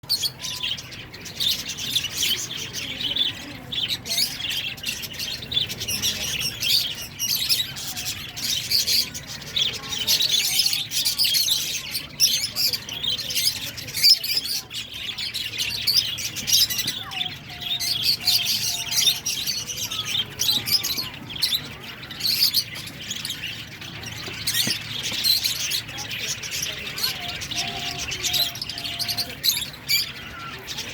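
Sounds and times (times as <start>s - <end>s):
budgerigars chirping: 0.1s - 30.9s.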